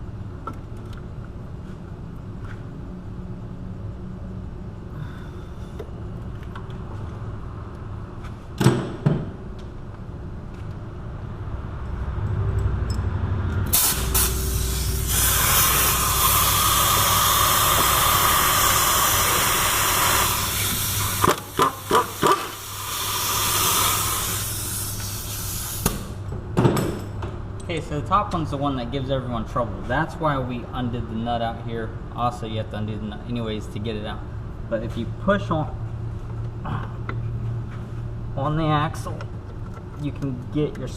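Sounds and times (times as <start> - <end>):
hiss of exhaust air: 13.7 - 26.2
pneumatic ratchet running: 13.7 - 26.2.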